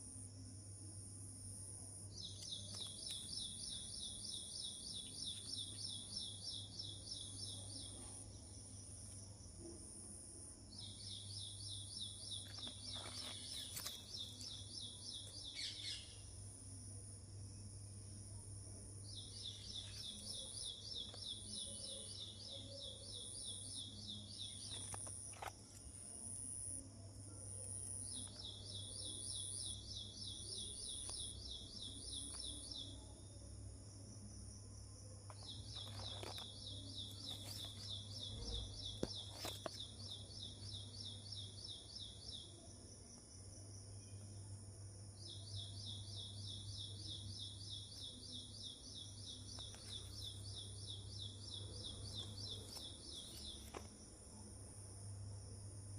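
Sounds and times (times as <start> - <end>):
faint high bird chirp: 35.3 - 42.7.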